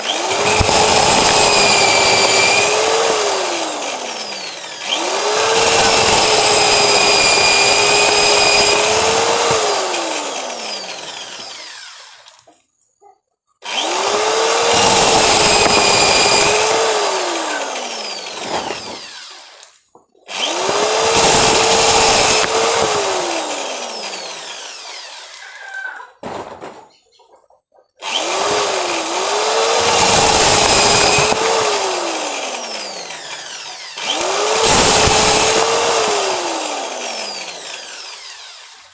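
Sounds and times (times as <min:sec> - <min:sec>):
cordless drill motor spinning: 0:00.0 - 0:12.5, 0:13.6 - 0:25.8, 0:28.0 - 0:38.9.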